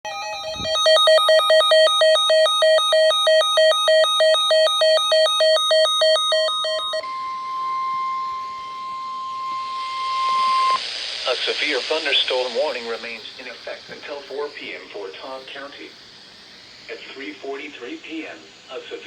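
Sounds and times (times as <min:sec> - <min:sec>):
electronic alert tones beeping: 0:00.0 - 0:10.8
steady alarm tone: 0:00.0 - 0:19.0.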